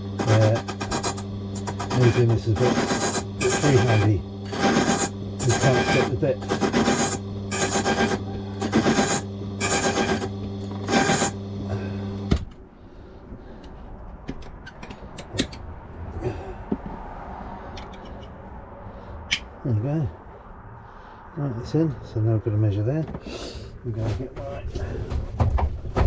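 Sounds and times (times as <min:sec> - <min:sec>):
key-cutting machine humming: 0:00.0 - 0:12.3.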